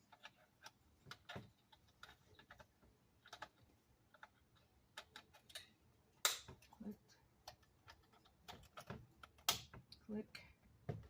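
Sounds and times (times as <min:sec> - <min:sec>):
plastic connectors clicking: 0:00.0 - 0:06.7.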